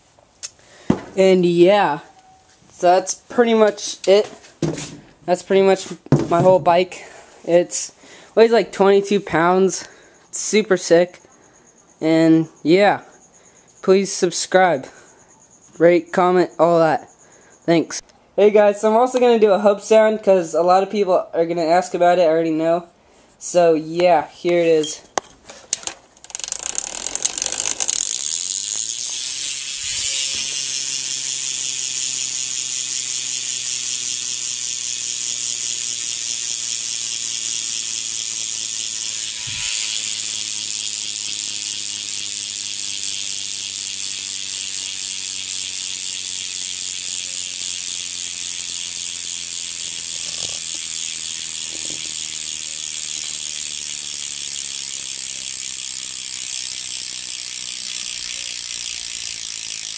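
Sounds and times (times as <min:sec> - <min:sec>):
bicycle hub ratchet buzzing: 0:06.9 - 0:12.3, 0:13.1 - 0:16.4, 0:24.6 - 0:59.9.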